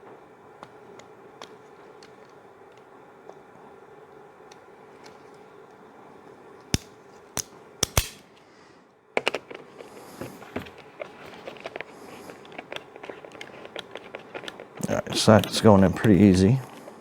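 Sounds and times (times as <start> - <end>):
multi-tool sharp clicks: 6.7 - 8.3
screwdriver clicking and scraping: 11.5 - 14.7.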